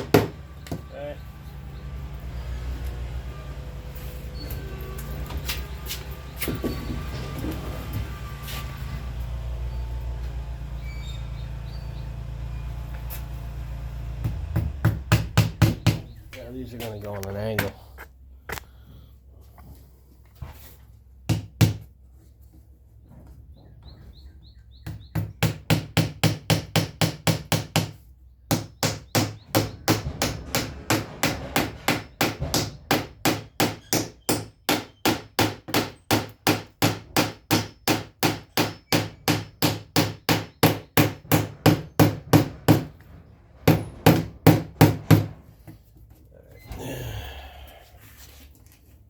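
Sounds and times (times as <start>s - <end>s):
hammer tapping nails into wood: 24.8s - 42.9s.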